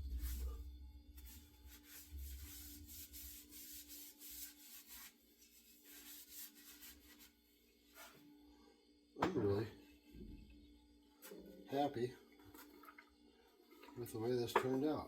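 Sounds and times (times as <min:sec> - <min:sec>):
sandpaper rubbing on wood: 0:01.7 - 0:07.3.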